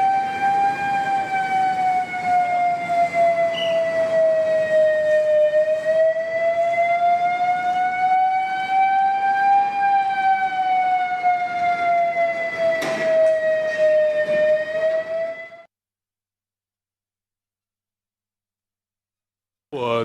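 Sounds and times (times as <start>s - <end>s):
emergency siren wailing: 0.0s - 15.7s.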